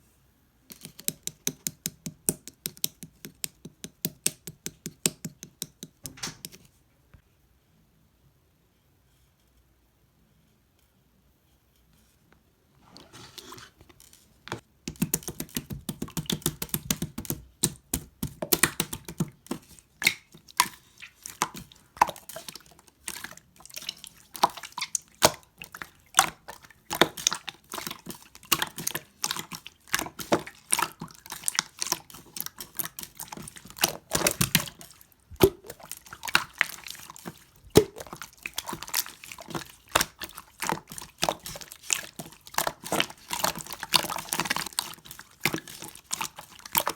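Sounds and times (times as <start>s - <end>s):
slime squishing by hand: 12.8s - 46.9s.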